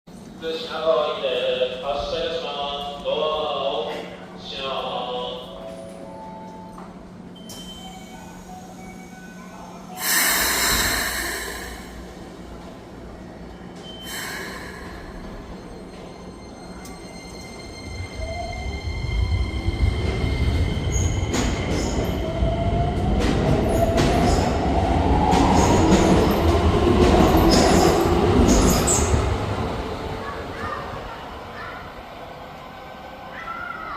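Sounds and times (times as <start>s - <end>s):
air brakes hissing: 10.0s - 12.2s, 13.8s - 15.5s.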